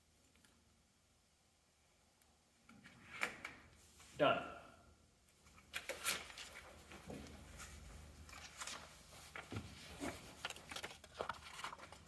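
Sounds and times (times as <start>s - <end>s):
material rustling and tapping: 5.7s - 12.0s.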